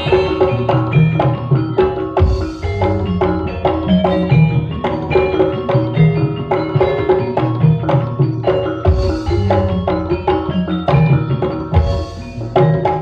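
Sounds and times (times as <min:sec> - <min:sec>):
gamelan gongs and metallophones: 0:00.0 - 0:13.0
hand drum strokes: 0:00.0 - 0:13.0.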